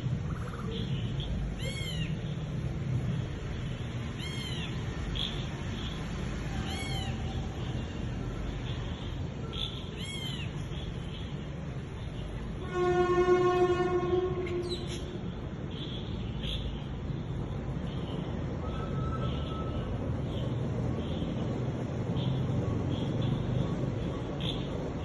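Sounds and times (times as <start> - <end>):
long flat horn-like tone: 12.6 - 14.8.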